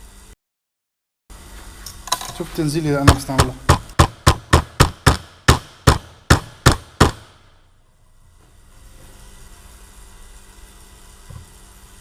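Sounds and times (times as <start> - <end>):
faint background hum: 1.3 - 12.0
sharp knocks: 3.0 - 7.4.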